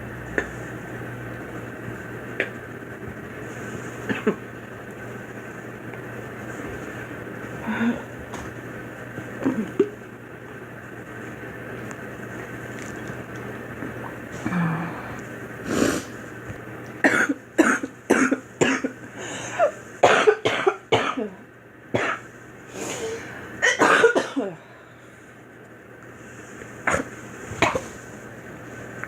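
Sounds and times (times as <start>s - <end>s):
woman coughing: 4.1s - 4.4s, 17.0s - 19.0s, 19.6s - 21.4s, 22.0s - 22.2s, 22.9s - 24.6s.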